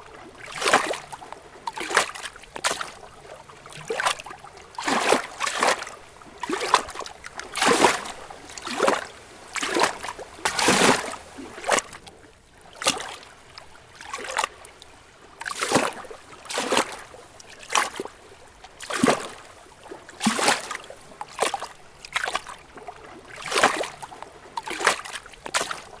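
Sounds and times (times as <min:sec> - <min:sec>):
water splashing: 0:00.0 - 0:12.1, 0:12.7 - 0:13.3, 0:18.8 - 0:19.5, 0:20.2 - 0:26.0
waves lapping against rocks: 0:00.0 - 0:26.0.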